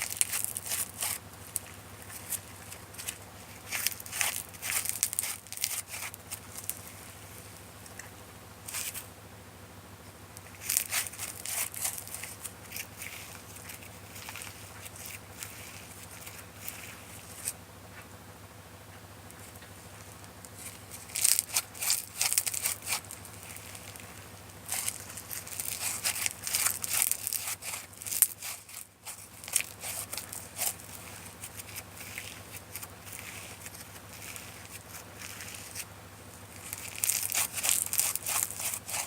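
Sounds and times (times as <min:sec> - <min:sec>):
slime squishing and popping: 0:36.4 - 0:39.0.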